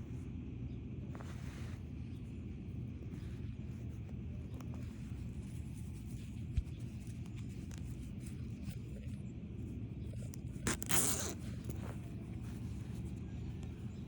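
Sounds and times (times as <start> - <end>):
low background rumble: 0.0 - 14.0
zipper pulled: 10.1 - 13.0.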